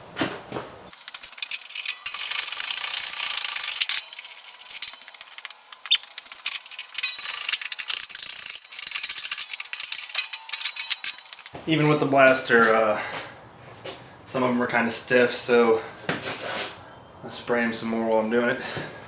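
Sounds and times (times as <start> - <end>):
ratchet wrench clicking: 1.2 - 11.4.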